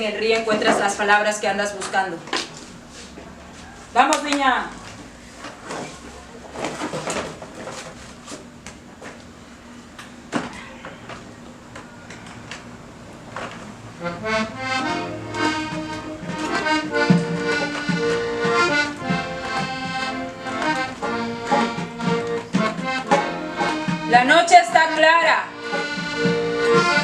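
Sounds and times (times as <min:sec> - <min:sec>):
accordion melody: 0:13.9 - 0:27.0
sharp knocks: 0:15.3 - 0:24.1.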